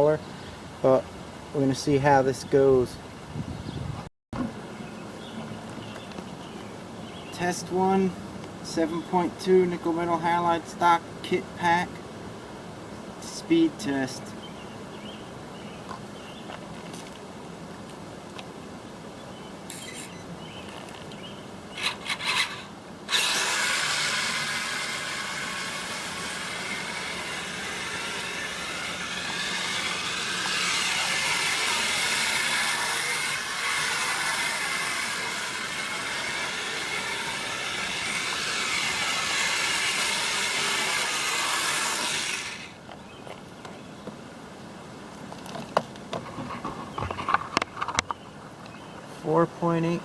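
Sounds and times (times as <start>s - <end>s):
toy vehicle motor grinding: 19.7s - 20.2s, 21.8s - 42.8s.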